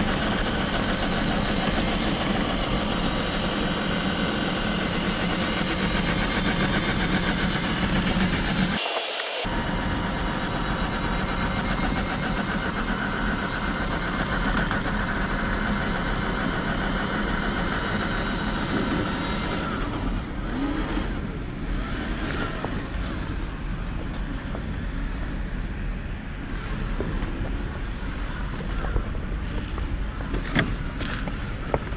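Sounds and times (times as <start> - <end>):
rc car motor whining: 8.8 - 9.5.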